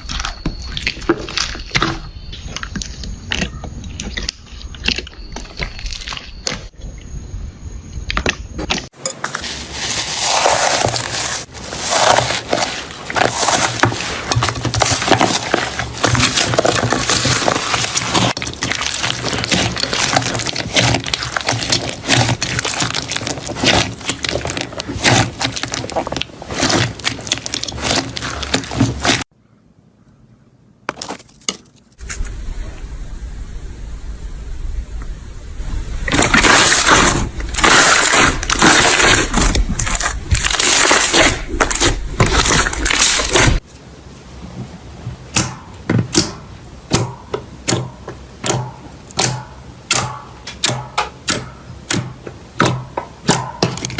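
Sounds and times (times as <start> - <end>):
slime crackling and popping: 10.1 - 29.3, 36.1 - 43.6.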